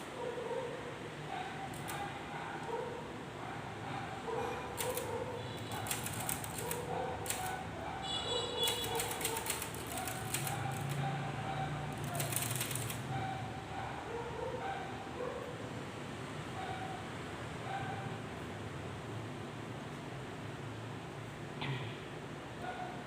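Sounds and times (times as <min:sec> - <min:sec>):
typewriter key strikes: 0:01.7 - 0:02.1, 0:04.8 - 0:07.6, 0:08.6 - 0:11.0, 0:11.9 - 0:13.1.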